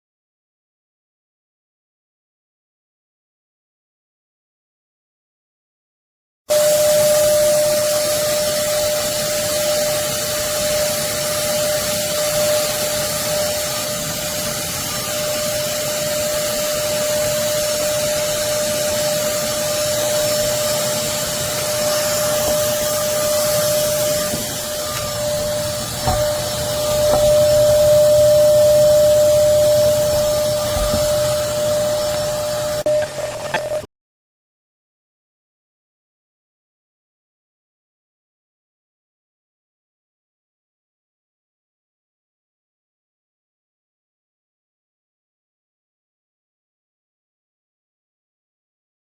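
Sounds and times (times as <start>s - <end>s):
vacuum cleaner rushing air and whine: 6.5s - 33.9s.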